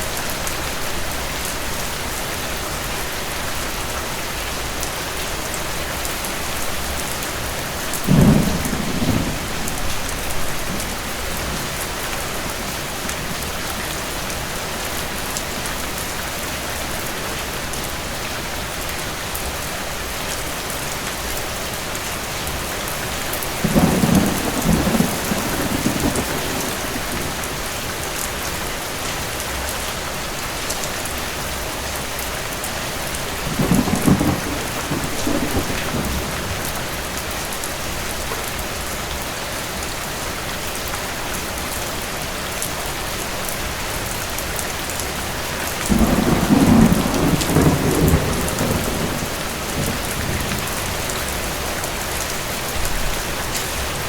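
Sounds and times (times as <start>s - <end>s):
steady rain: 0.0s - 54.0s
distant thunder rolls: 8.0s - 13.5s, 23.6s - 27.9s, 33.4s - 37.0s, 45.9s - 51.5s.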